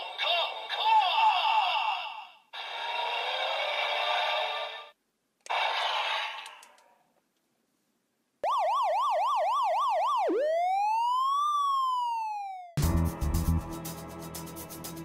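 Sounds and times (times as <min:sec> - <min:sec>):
electronic siren: 0:08.4 - 0:12.8.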